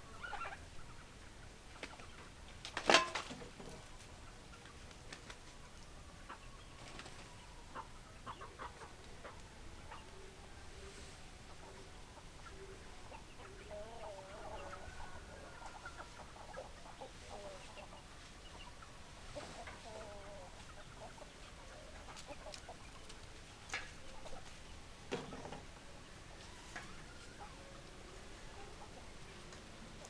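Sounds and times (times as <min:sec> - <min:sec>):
chickens clucking: 0:05.6 - 0:10.4, 0:11.3 - 0:30.0.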